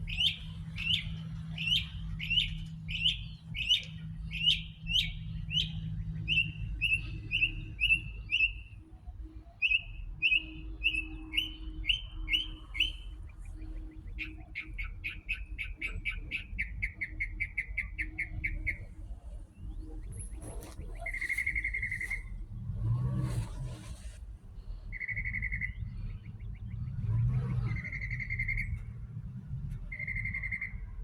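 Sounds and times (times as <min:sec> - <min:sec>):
songbird chirping: 0:00.0 - 0:31.0.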